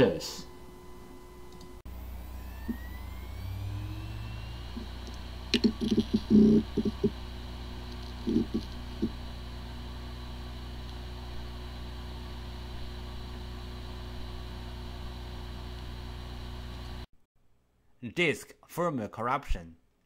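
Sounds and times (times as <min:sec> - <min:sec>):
steady mechanical hum: 0:00.0 - 0:17.1.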